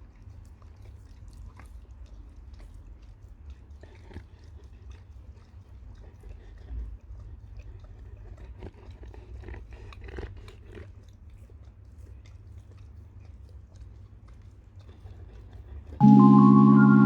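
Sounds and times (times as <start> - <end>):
pet chewing with crunching clicks: 0.0 - 16.0
low steady hum: 16.0 - 17.0.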